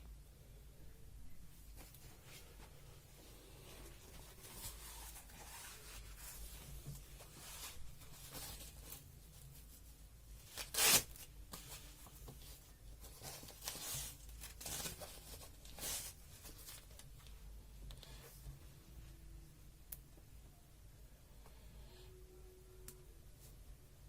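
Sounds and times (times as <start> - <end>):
rustling and scraping handling noise: 1.5 - 18.7.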